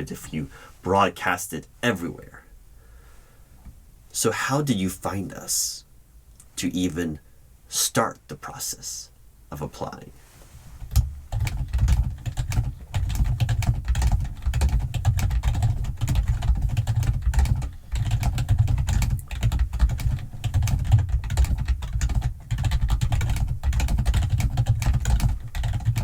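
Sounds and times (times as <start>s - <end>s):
typing on computer keyboard: 10.9s - 26.0s.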